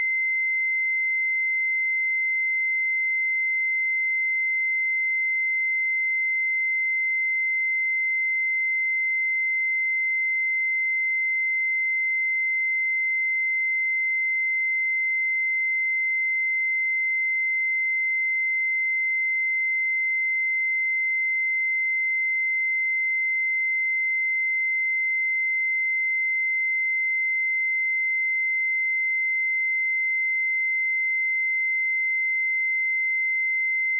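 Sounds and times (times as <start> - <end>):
sine-wave test tone: 0.0 - 33.9.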